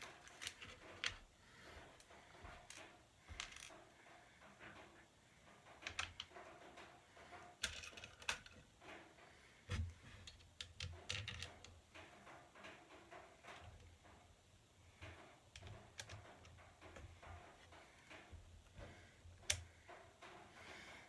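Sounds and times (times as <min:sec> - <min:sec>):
clicks and knocks of small parts: 0:00.0 - 0:20.6.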